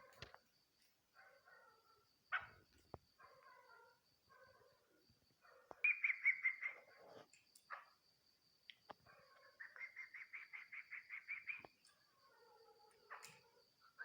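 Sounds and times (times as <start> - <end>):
loud chuk calls: 9.5 - 11.7.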